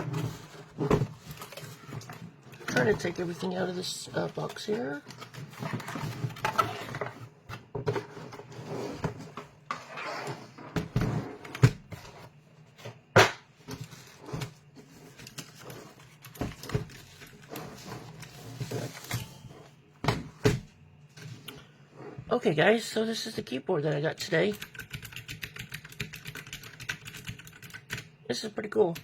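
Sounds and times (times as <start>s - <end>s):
cardboard rustling and scraping: 0.0s - 20.4s.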